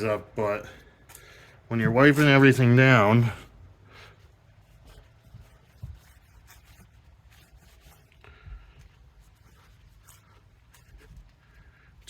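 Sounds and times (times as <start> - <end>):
wet wipe scuffing on paint: 1.6 - 12.0
soft bumps: 4.5 - 11.8.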